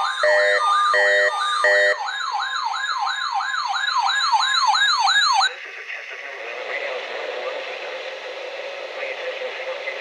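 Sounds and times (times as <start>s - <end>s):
electronic yelp siren: 0.0s - 5.5s.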